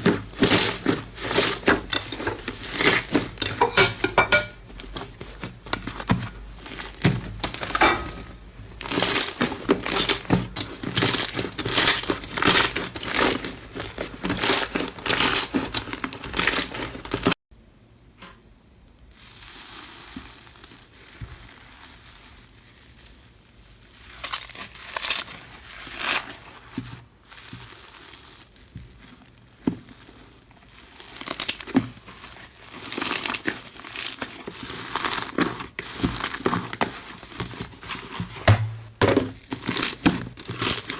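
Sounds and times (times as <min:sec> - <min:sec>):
slime crackling and popping: 0:08.7 - 0:17.3, 0:27.2 - 0:40.9.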